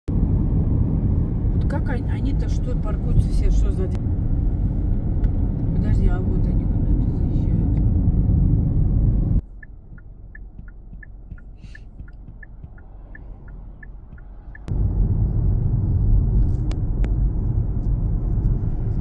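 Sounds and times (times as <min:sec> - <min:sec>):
car cabin rumble: 0:00.1 - 0:19.0
light even ticking: 0:09.6 - 0:14.7.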